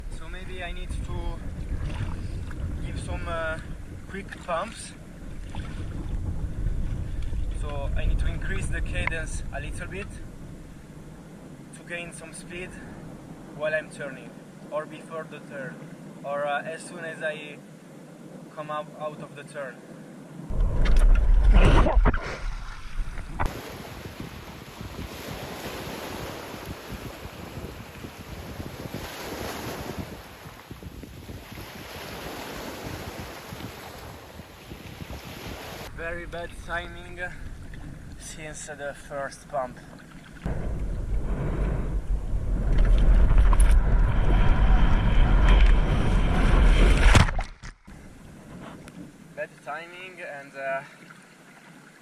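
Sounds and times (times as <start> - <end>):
wind buffeting microphone: 0.0 - 11.6, 20.5 - 49.3
water and small waves: 0.0 - 52.0
rushing water: 21.8 - 35.9.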